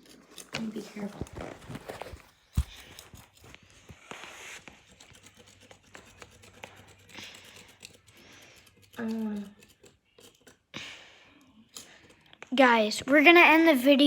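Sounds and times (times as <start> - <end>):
packaging rustling and tearing: 0.0 - 4.6.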